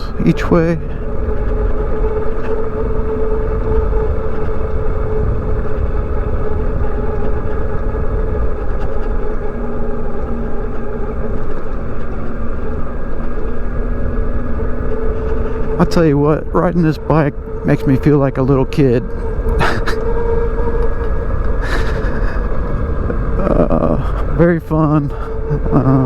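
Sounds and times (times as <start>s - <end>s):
motor whine: 0.0s - 26.0s
motorcycle road noise: 0.0s - 26.0s
wind rush: 0.0s - 26.0s.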